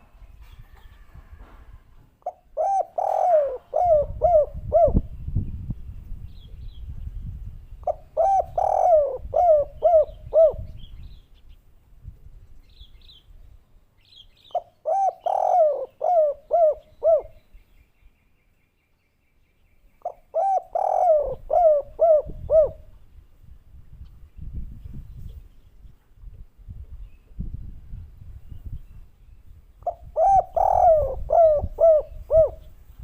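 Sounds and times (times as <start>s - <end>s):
dove cooing: 2.2s - 5.1s, 7.8s - 10.8s, 14.5s - 17.4s, 20.0s - 22.9s, 29.8s - 32.8s.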